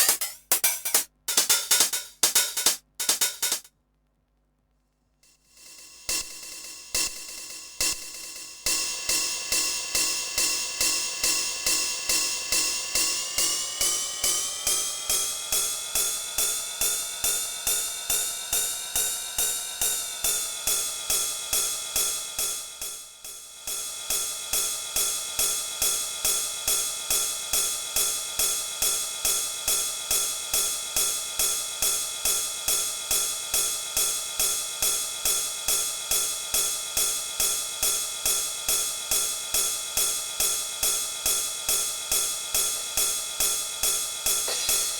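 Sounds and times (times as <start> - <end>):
drum machine beat: 0.0 - 3.7, 42.2 - 43.2, 44.4 - 44.9
hi-hats and cymbals: 0.0 - 3.7, 5.6 - 44.9.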